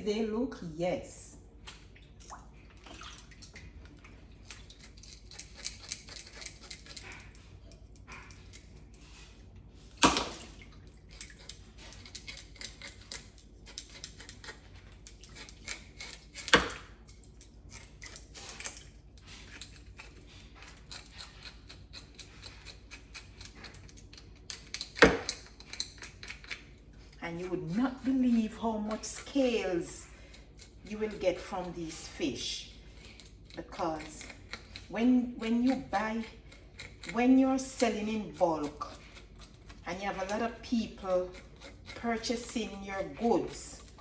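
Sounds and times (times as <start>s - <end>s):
knife scraping fish scales: 4.4s - 10.0s, 11.1s - 44.0s.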